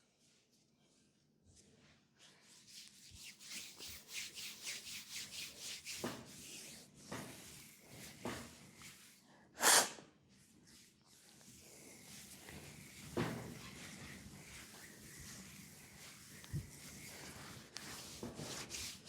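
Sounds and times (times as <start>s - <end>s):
hands rubbing skin: 2.5s - 9.2s, 10.7s - 19.0s.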